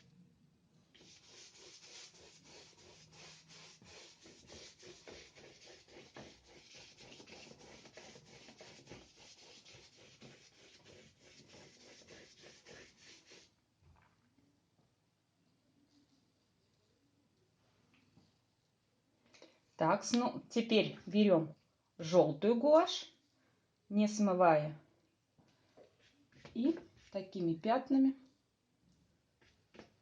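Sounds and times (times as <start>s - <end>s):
paintbrush scrubbing paper: 1.0s - 13.5s.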